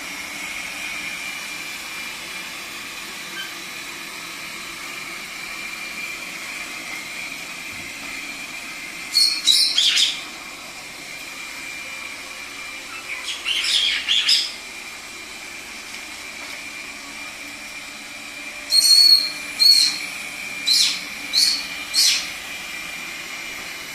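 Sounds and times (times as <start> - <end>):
robot vacuum cleaner humming: 0.0 - 23.9
parrot calling: 9.1 - 10.2, 12.9 - 14.6, 18.7 - 20.0, 20.6 - 22.3.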